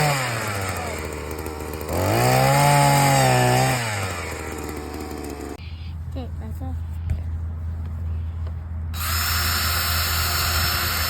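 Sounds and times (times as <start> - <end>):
small auger engine running: 0.0 - 5.6, 9.0 - 11.0.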